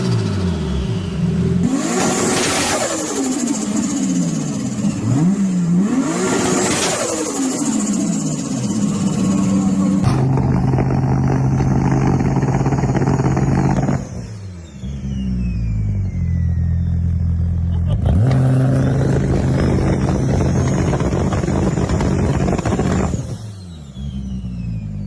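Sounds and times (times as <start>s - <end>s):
car engine pulling hard: 0.0s - 25.0s
turbo whistle: 14.6s - 17.4s.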